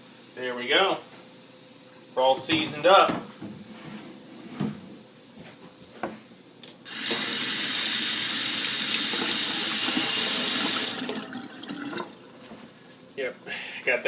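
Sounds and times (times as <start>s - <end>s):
tap water running into sink: 6.9s - 12.6s.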